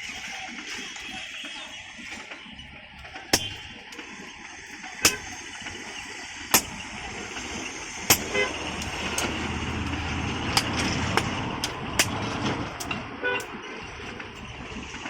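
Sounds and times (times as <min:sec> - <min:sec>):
traffic rumble: 0:00.0 - 0:15.0
hammer striking iron on anvil: 0:03.3 - 0:03.9, 0:05.0 - 0:05.9, 0:06.5 - 0:07.0, 0:08.0 - 0:09.4, 0:10.5 - 0:12.2.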